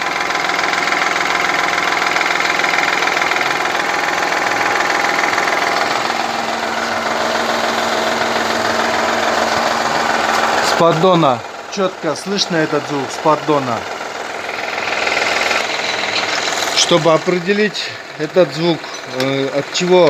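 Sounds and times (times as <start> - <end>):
engine idling with rattling knock: 0.0 - 20.0.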